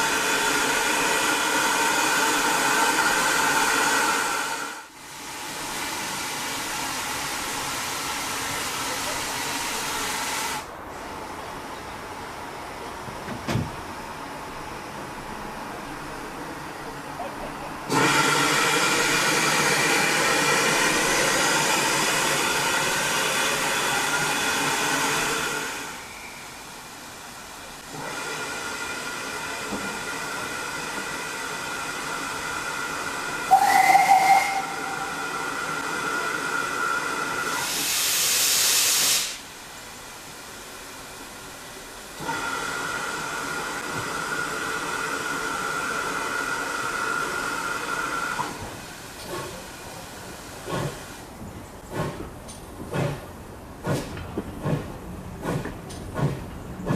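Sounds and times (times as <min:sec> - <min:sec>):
steam locomotive hissing steam: 0:00.0 - 0:11.8, 0:16.8 - 0:56.9
steam whistle blast: 0:33.5 - 0:36.2.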